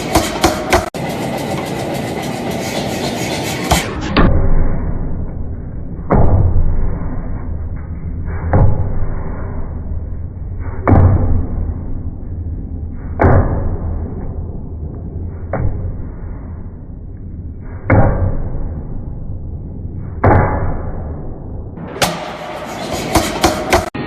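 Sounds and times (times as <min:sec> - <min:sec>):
heavy machine impacts: 0:21.8 - 0:24.0.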